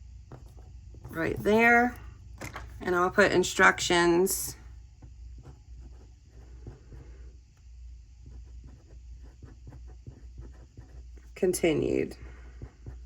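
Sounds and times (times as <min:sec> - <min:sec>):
pen scratching on paper: 0:00.4 - 0:02.0, 0:05.4 - 0:07.0, 0:08.2 - 0:11.4, 0:12.4 - 0:13.0.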